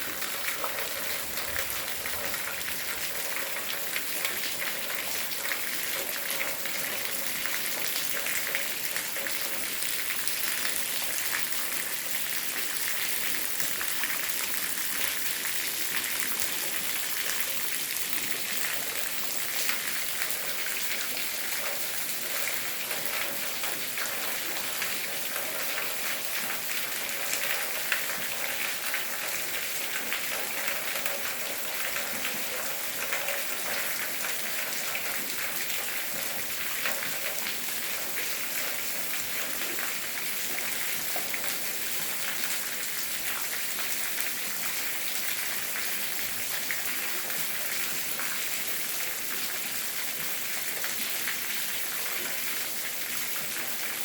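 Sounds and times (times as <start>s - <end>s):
rain on a hard surface: 0.0s - 54.0s.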